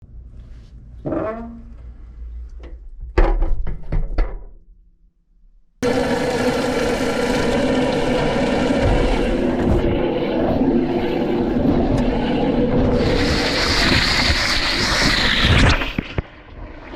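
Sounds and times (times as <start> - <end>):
washing machine motor churning: 5.8 - 16.0.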